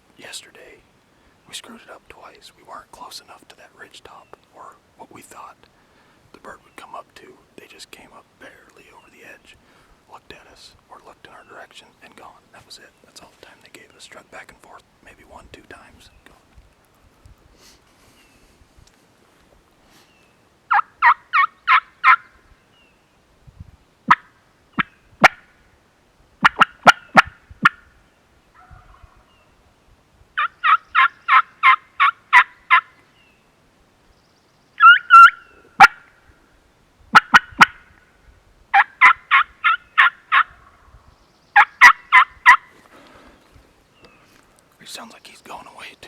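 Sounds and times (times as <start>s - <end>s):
turkey call yelps: 20.7s - 22.4s, 26.4s - 27.9s, 30.4s - 33.0s, 34.8s - 36.2s, 37.1s - 37.9s, 38.7s - 40.9s, 41.6s - 42.8s.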